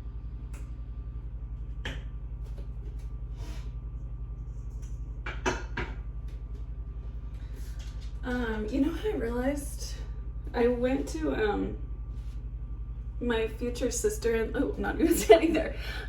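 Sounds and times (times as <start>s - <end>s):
low pulsing hum: 0.0s - 16.0s.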